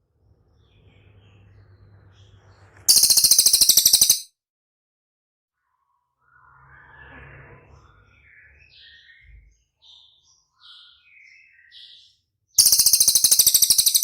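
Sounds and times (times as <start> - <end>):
bird rapid rattling call: 2.9 - 4.3, 12.6 - 14.0
songbird chirps and whistles: 2.9 - 4.3, 12.6 - 14.0.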